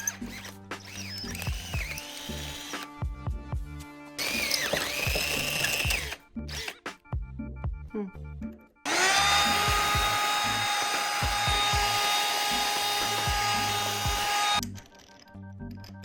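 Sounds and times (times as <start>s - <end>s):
power drill boring into metal: 0.0s - 2.9s, 4.2s - 6.8s, 8.9s - 14.7s.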